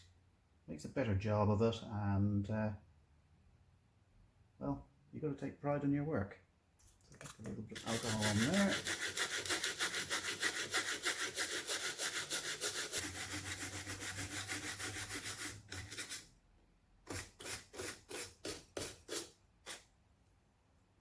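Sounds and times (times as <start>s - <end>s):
scrubbing circuit board: 7.8s - 9.9s.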